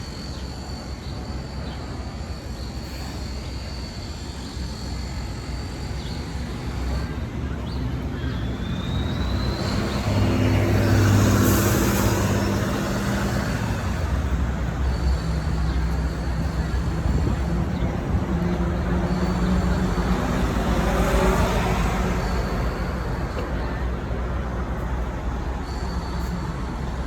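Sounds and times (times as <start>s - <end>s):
heavy engine running: 0.0s - 27.0s
passing vehicles: 6.5s - 27.0s.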